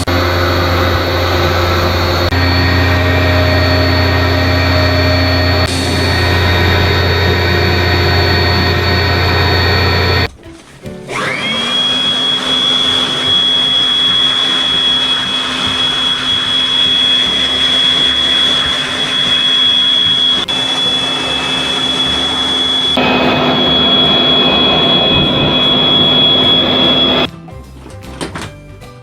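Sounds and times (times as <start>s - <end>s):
pressure washer motor whine: 0.0s - 10.3s, 11.1s - 27.3s
water spraying: 5.3s - 10.2s, 11.5s - 27.2s.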